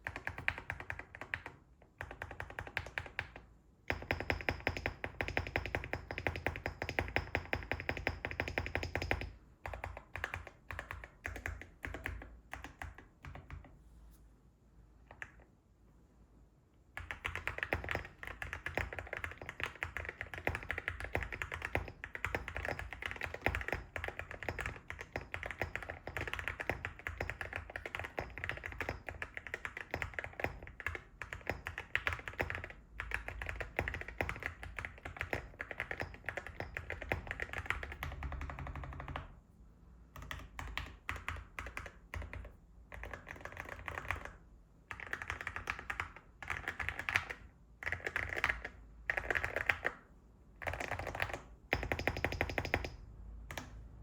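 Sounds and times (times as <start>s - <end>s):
mechanical keyboard typing: 0.0s - 13.7s, 17.0s - 39.4s, 40.2s - 54.0s.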